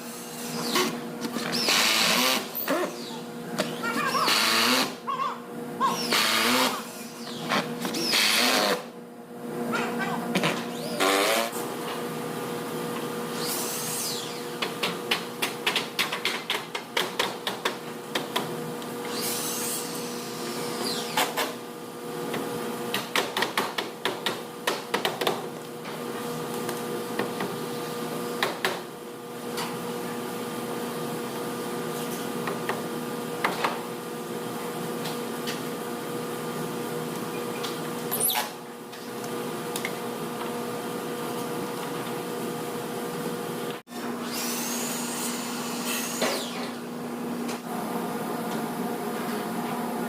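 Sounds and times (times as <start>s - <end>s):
power tool motor whirring: 0.0s - 5.0s, 5.9s - 8.9s, 10.7s - 11.6s, 44.2s - 46.8s
steady mechanical hum: 0.0s - 50.0s.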